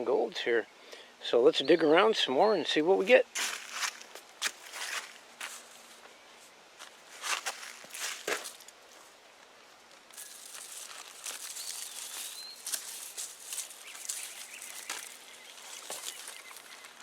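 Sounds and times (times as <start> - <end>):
digging in loose soil: 3.3 - 6.0, 6.9 - 9.2, 10.0 - 17.0.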